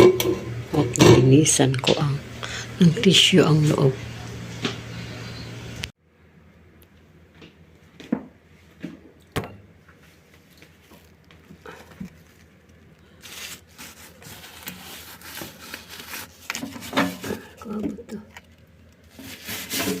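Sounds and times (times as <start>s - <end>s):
paper tissue rubbing and crinkling: 10.1s - 20.0s.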